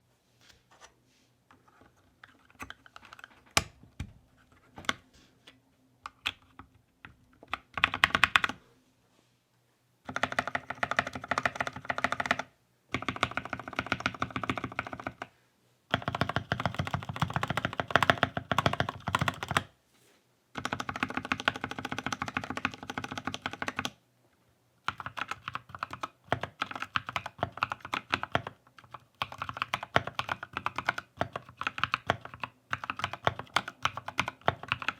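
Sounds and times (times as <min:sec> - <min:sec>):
rapid repeated key presses: 0:06.1 - 0:08.6, 0:10.0 - 0:15.3, 0:15.9 - 0:19.7, 0:20.5 - 0:24.0, 0:24.8 - 0:34.9
typing on keyboard: 0:06.1 - 0:08.6, 0:10.1 - 0:15.3, 0:15.9 - 0:19.7, 0:20.6 - 0:24.0, 0:24.8 - 0:34.9
mechanical keyboard keystrokes: 0:10.1 - 0:15.3, 0:15.9 - 0:19.6, 0:20.6 - 0:24.0, 0:24.9 - 0:34.9.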